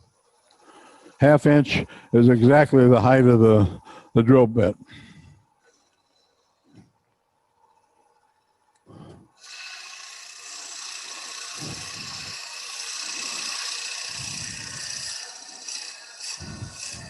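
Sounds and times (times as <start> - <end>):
drill bit cutting wood on lathe: 9.4 - 17.0.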